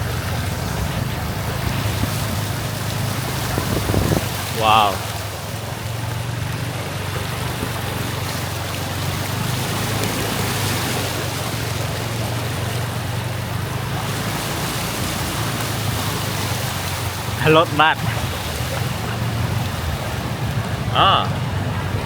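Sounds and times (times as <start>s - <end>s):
heavy rain rushing: 0.0s - 6.9s, 7.5s - 22.0s.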